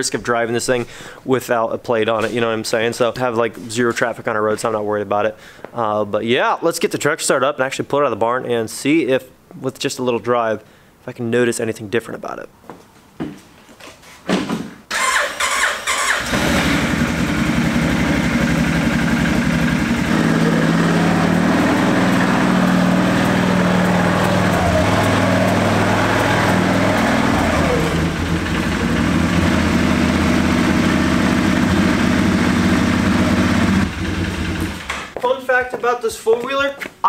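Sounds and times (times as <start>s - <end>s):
atv engine cranking and running: 14.9s - 35.1s.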